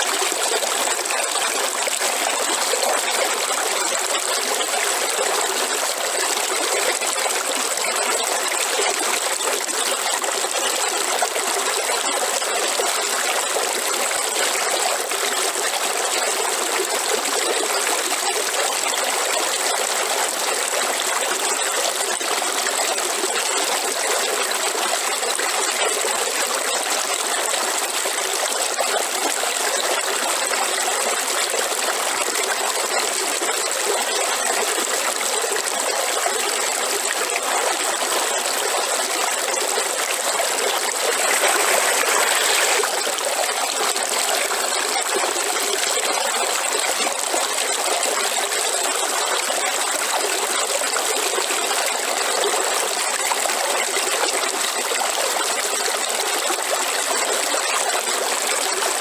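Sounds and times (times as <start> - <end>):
river water flowing: 0.0 - 14.8, 30.2 - 57.2.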